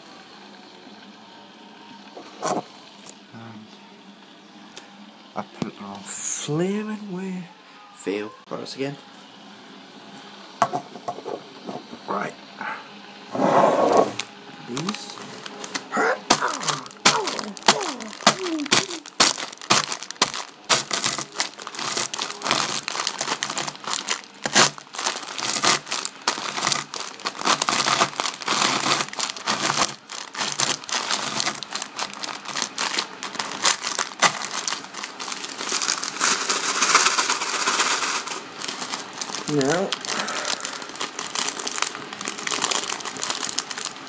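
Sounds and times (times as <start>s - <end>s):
wrapper crinkling and crunching: 14.2s - 44.0s.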